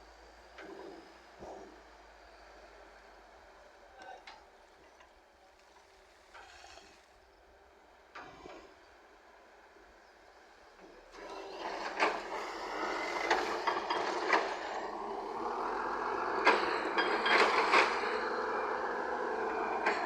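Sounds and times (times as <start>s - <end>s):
heavy machinery rumbling: 11.1s - 20.0s
sharp knocks and clanks: 16.4s - 18.5s.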